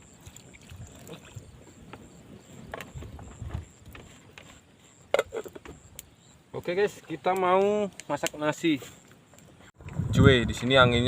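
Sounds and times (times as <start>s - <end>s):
wind buffeting microphone: 0.6s - 4.2s, 9.8s - 11.0s.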